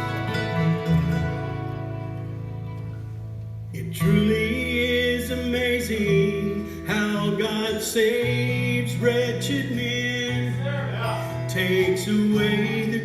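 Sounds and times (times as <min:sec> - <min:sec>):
plucked banjo: 0:00.0 - 0:03.2
fiddle melody: 0:00.0 - 0:03.6
guitar: 0:00.0 - 0:13.0.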